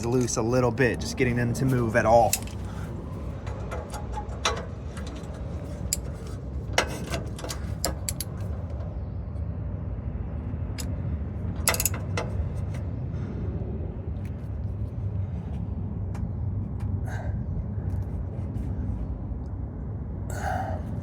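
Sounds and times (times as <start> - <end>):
steady low rumble: 0.0 - 21.0
socket ratchet clicking: 11.6 - 12.4.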